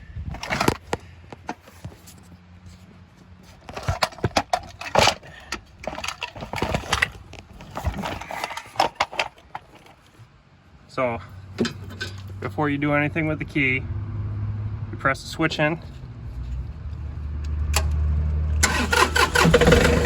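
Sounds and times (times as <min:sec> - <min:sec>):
handling clicks and knocks: 0:03.5 - 0:10.2, 0:11.6 - 0:12.5.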